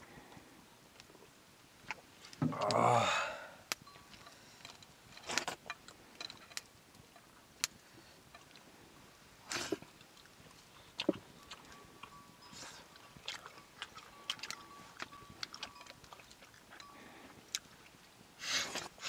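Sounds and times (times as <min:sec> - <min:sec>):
person chewing food: 0:09.5 - 0:18.0.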